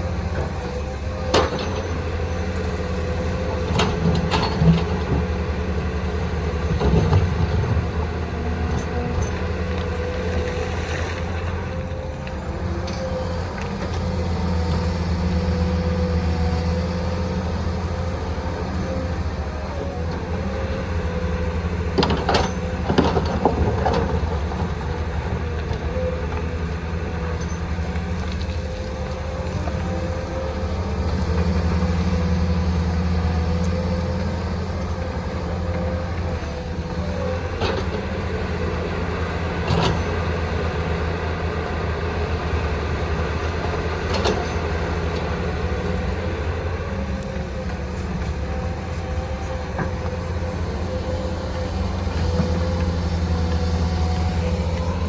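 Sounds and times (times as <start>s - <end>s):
excavator diesel engine running: 0.0s - 55.0s.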